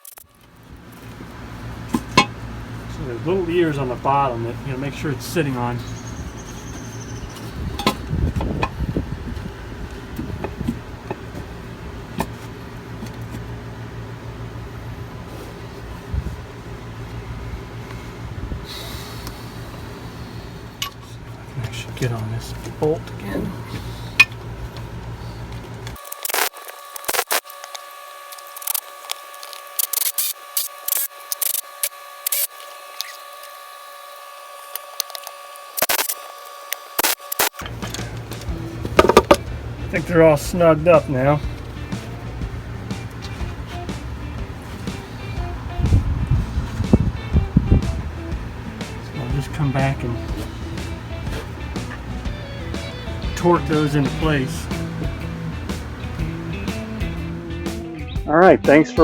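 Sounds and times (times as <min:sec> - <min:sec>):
low background hum: 0:00.1 - 0:59.0
wrench clicks and scrapes: 0:25.8 - 0:33.5, 0:34.7 - 0:38.1.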